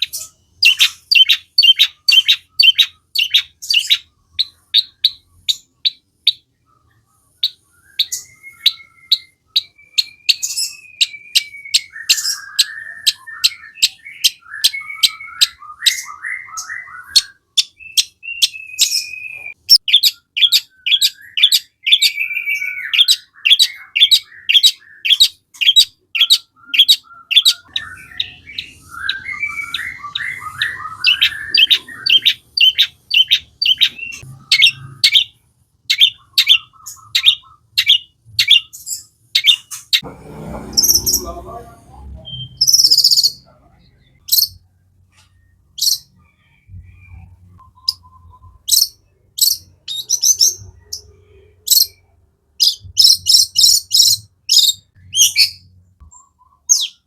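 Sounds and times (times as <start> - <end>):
shrike singing: 7.5 - 38.7.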